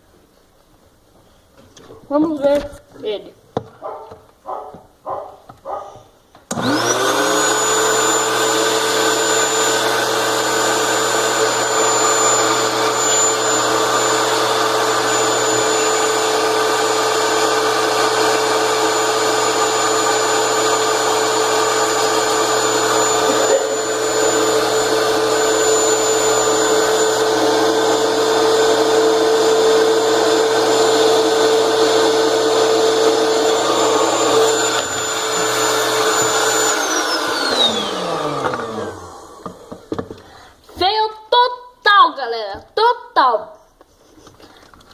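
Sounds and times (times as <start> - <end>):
air mattress inflator whining: 6.5 - 40.4.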